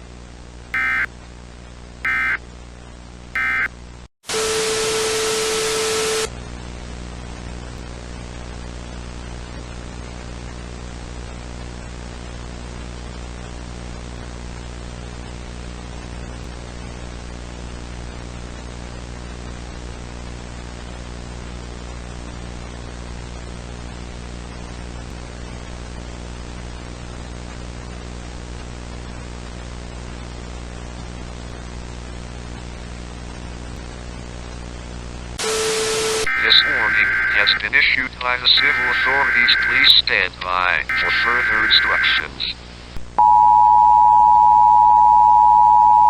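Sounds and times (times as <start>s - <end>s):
burst of static with tone: 0.8s - 1.1s, 2.1s - 2.4s, 3.4s - 3.7s, 4.3s - 6.3s, 35.4s - 42.9s
data tones: 0.8s - 1.1s, 2.1s - 2.4s, 3.4s - 3.7s, 35.4s - 42.6s
static hiss: 35.4s - 43.1s.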